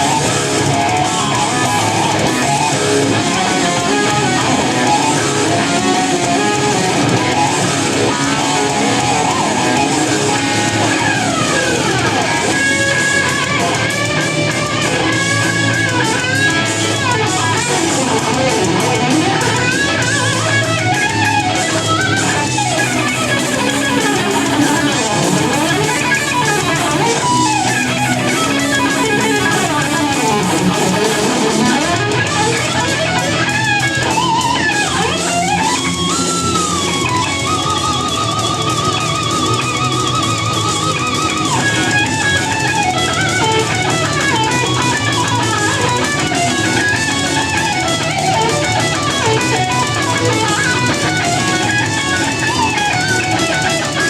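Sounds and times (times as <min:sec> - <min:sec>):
backing band with bass: 0:00.0 - 0:54.0
electric guitar lead with bends: 0:00.0 - 0:54.0.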